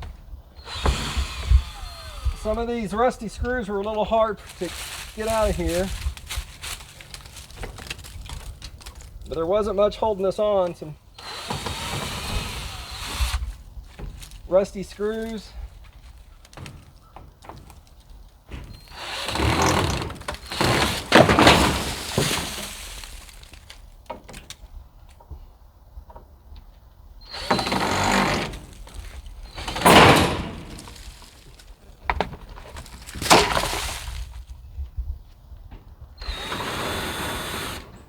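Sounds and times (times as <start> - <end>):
cordless drill backing out screws: 0.6 - 2.6, 11.2 - 14.4, 18.5 - 23.8, 27.3 - 34.3, 36.2 - 38.0
metal gutter clanking and rattling: 18.5 - 23.6, 27.4 - 34.2
sharp knocks: 29.6 - 31.0.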